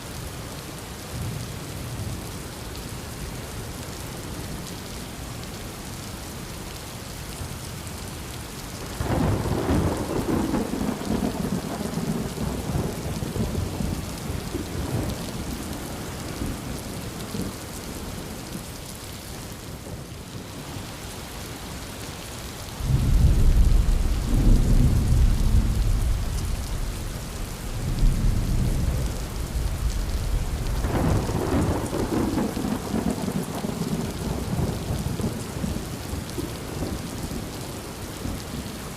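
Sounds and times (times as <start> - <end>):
heavy rain: 0.0 - 38.9
thunder rumbling: 9.0 - 18.3, 22.8 - 37.1
thunder crack: 22.8 - 33.2.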